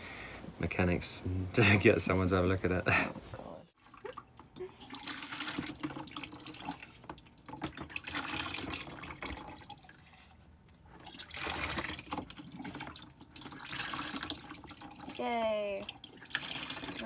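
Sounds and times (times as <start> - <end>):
water splashing into container: 3.8 - 10.2, 11.0 - 17.0.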